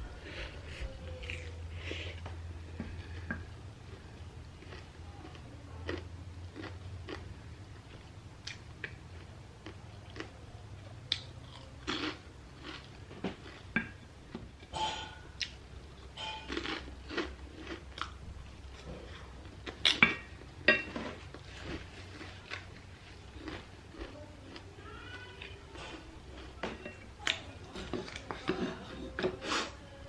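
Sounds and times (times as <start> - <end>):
wet chewing: 14.6 - 20.5, 21.2 - 29.2
small crunches: 20.9 - 26.5.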